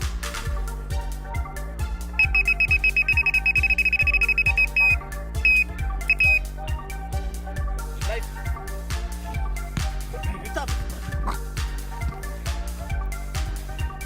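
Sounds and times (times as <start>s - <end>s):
background music with steady beat: 0.0s - 14.0s
bite alarm beeping: 2.2s - 6.5s.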